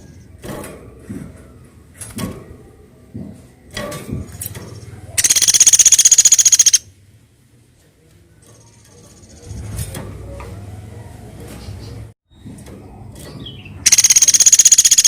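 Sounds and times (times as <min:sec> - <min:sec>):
woodpecker calling: 0:05.2 - 0:06.8, 0:13.8 - 0:15.0
woodpecker high-pitched rattle: 0:05.2 - 0:06.8, 0:13.8 - 0:15.0.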